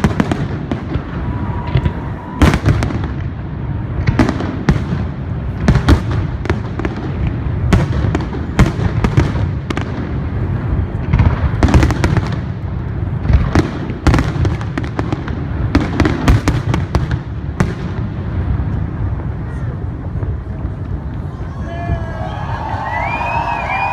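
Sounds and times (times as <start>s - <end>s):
fireworks bangs: 0.0s - 23.9s
low rumble of bursts: 0.0s - 23.9s.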